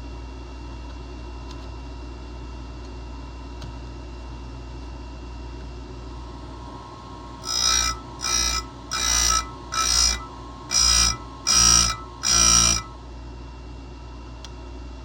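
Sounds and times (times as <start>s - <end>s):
grinder motor hum: 6.1s - 13.1s
grinding passes with ringing screech: 7.0s - 13.0s.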